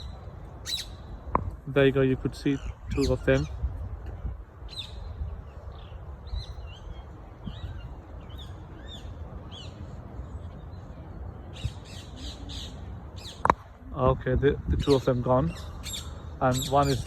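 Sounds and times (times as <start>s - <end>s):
parrots chirping: 0.0s - 1.1s.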